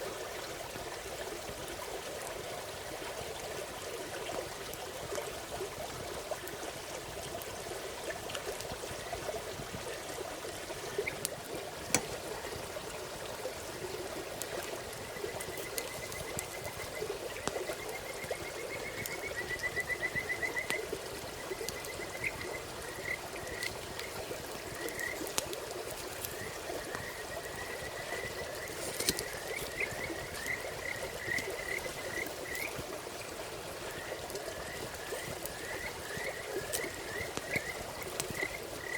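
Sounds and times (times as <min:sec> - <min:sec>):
running water burbling: 0:00.0 - 0:38.9
frogs trilling: 0:10.6 - 0:38.9.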